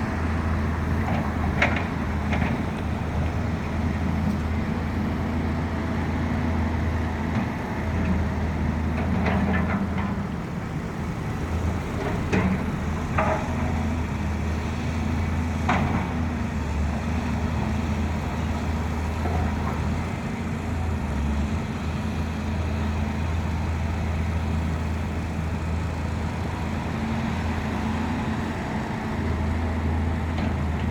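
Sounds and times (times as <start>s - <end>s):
excavator engine droning: 0.0s - 30.9s.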